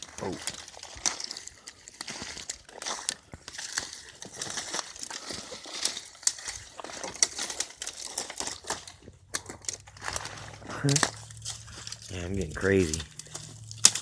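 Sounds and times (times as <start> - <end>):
footsteps crunching through dry brush: 0.0 - 14.0.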